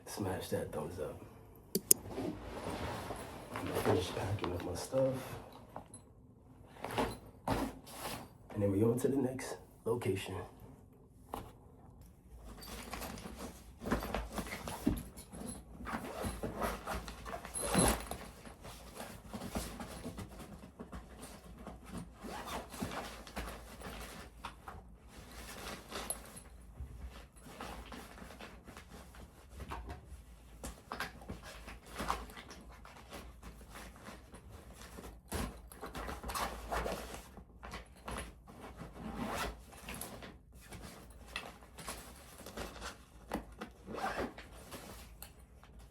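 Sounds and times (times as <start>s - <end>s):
clothes and bags rustling: 2.0s - 8.8s, 10.3s - 45.9s
zippers opening and closing: 43.8s - 44.4s.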